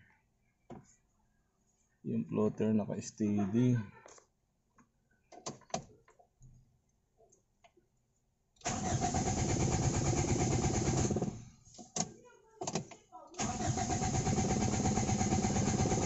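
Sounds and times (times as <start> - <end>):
car engine cranking on starter: 8.6 - 11.4, 13.4 - 16.0.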